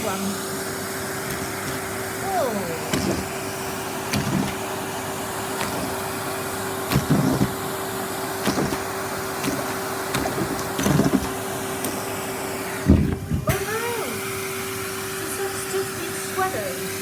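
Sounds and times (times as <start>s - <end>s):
vacuum cleaner humming: 0.0s - 17.0s
vacuum nozzle knocking: 1.2s - 13.9s.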